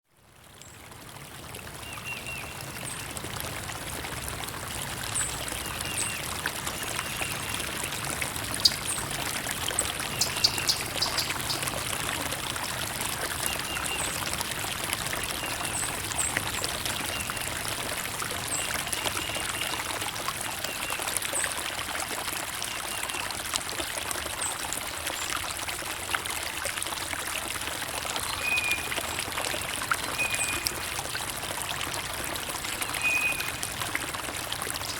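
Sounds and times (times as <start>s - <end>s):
stream trickling and splashing: 0.0s - 34.9s
high bird chirps: 10.1s - 11.6s.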